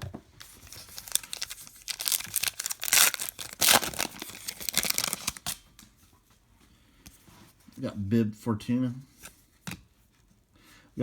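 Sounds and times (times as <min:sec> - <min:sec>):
wrapper tearing and crinkling: 0:00.4 - 0:05.6.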